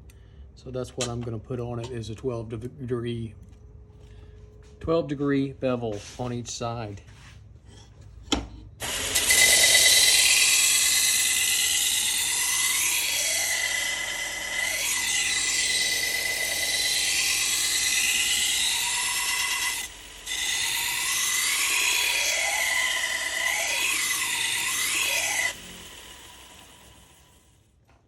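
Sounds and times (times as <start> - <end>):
belt sander whining: 8.8 - 27.5.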